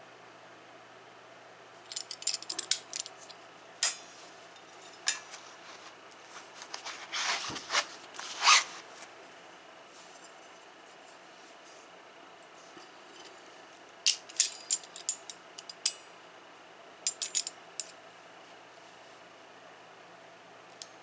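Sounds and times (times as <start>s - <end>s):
pliers clinking and clicking: 1.9s - 4.1s, 17.1s - 17.9s.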